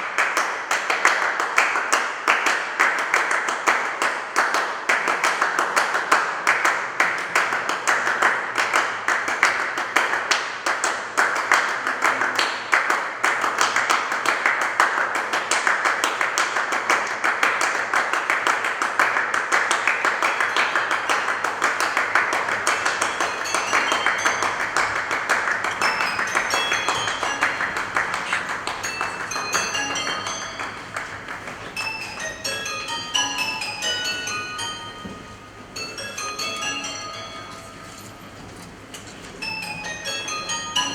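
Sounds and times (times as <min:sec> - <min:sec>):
tuned percussion ringing notes: 0:20.6 - 0:40.9.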